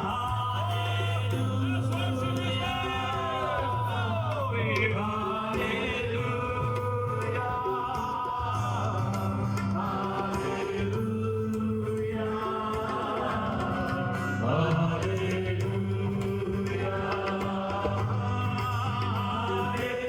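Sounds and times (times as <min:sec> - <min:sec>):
voices singing a chant: 0:00.0 - 0:20.0.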